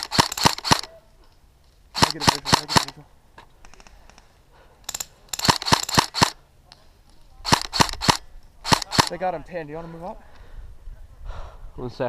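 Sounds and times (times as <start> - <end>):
airsoft gun shots: 0.0 - 0.9, 2.0 - 2.9, 5.4 - 6.4, 7.4 - 9.2.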